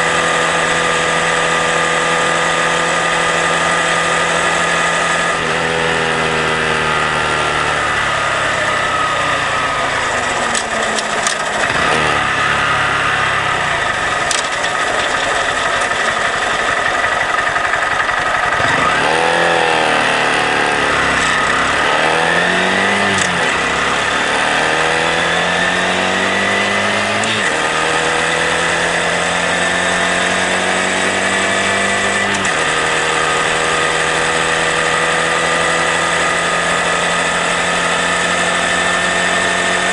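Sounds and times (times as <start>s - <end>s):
motorcycle engine cruising: 0.0s - 39.9s.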